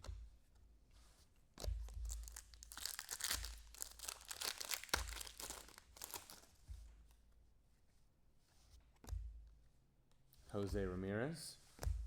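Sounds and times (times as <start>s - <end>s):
foil wrapper tearing and crinkling: 2.1s - 6.5s.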